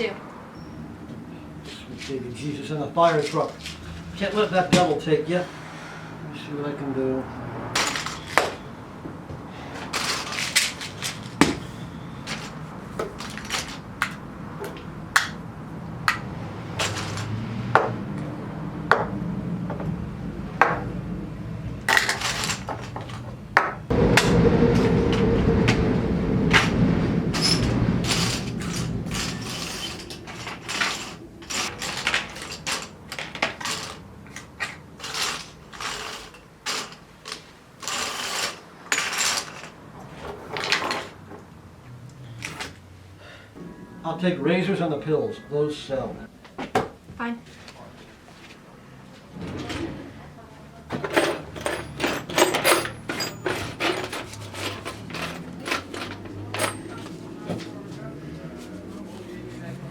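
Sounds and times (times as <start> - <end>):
rumbling scrape: 7.5 - 14.8, 21.8 - 41.4, 49.2 - 59.9.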